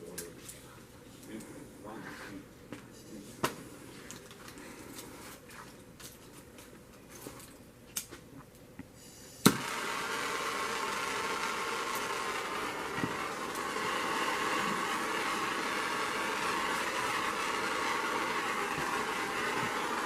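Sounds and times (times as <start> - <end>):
gas torch lighting pop: 9.4 - 9.7
gas torch hissing: 9.4 - 20.0.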